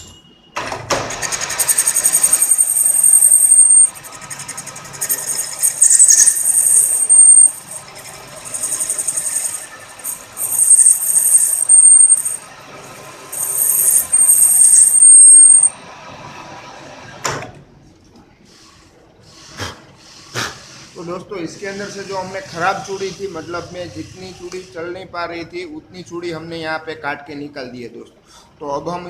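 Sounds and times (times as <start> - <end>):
lathe cutting tool squealing: 1.2 - 12.4, 13.4 - 15.7.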